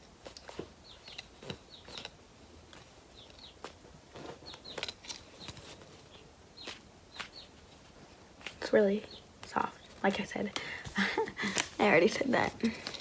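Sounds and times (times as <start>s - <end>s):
chicks peeping: 0.6s - 2.1s, 3.0s - 7.8s.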